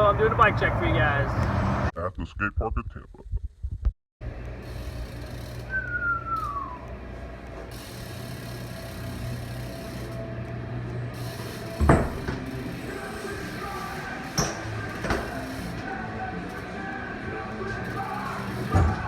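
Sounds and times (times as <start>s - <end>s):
bike rolling and ticking: 4.2s - 19.0s
low hum: 4.2s - 19.0s.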